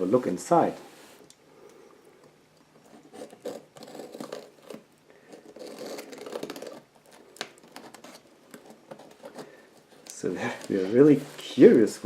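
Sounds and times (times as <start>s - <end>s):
tearing packing tape and cardboard: 2.9s - 9.5s.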